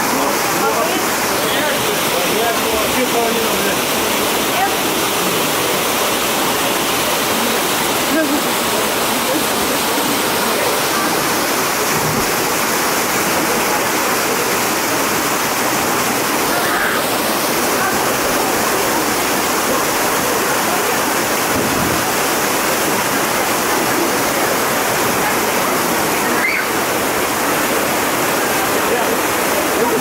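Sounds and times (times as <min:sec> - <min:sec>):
waterfall pouring: 0:00.0 - 0:30.0.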